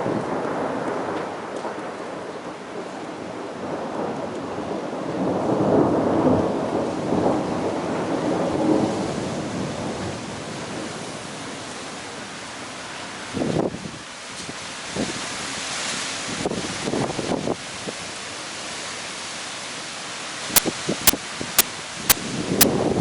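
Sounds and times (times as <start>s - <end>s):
rolling thunder: 0.0s - 11.0s
rain hissing: 18.4s - 23.0s.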